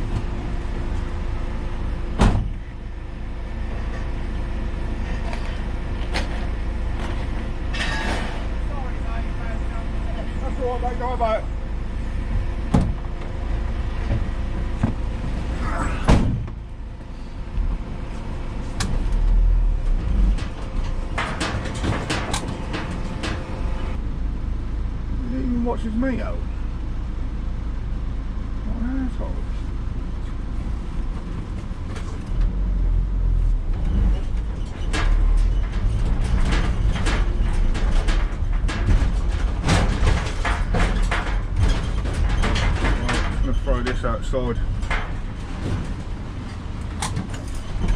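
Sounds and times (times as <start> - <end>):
steady low rumble: 0.0 - 47.9
vehicle engine running: 0.0 - 47.9
scrap metal clanking: 7.7 - 8.6, 20.0 - 24.0, 34.1 - 47.9
sharp knocks: 21.0 - 23.6
loud bang: 21.0 - 24.0.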